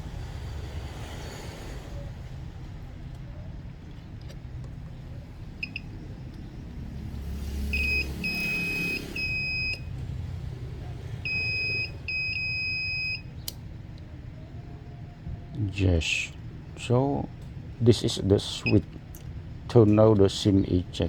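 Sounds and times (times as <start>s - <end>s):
multimeter continuity beeps: 5.6s - 6.4s, 7.7s - 10.0s, 11.2s - 13.5s, 18.6s - 18.9s.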